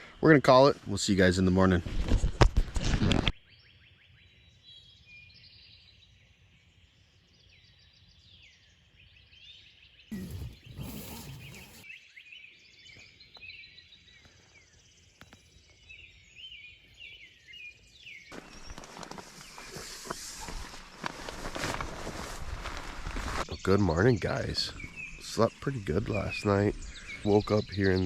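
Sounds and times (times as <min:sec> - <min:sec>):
birds chirping and singing: 0:23.6 - 0:28.0.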